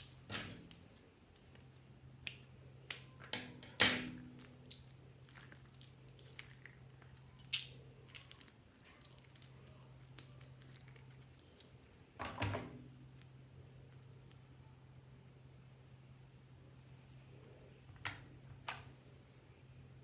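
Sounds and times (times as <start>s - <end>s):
faint steady hum: 0.0s - 20.0s
slime squishing by hand: 4.0s - 12.1s.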